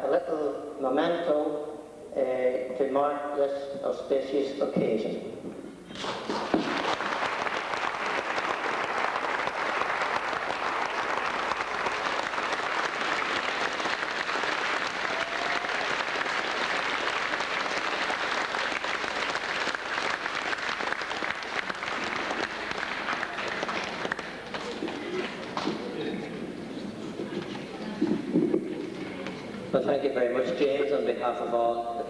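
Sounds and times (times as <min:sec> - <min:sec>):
congregation applauding: 0:05.9 - 0:29.8.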